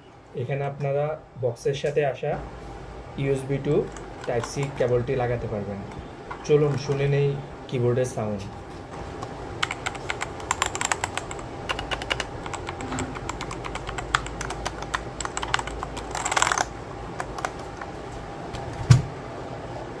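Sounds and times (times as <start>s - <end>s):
mechanical keyboard typing: 3.8s - 5.1s, 9.6s - 17.9s.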